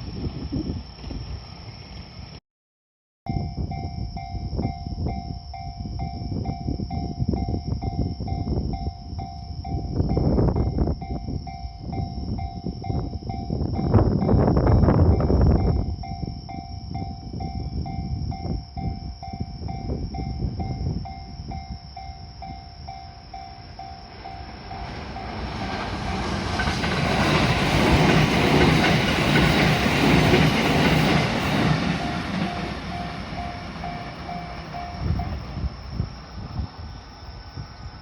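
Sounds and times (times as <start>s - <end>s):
train rumble: 3.3s - 38.0s
level crossing alarm dinging: 31.1s - 35.6s.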